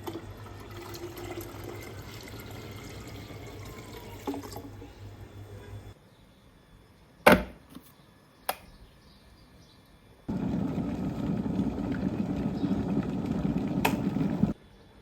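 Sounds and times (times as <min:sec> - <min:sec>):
running water: 0:10.3 - 0:14.6.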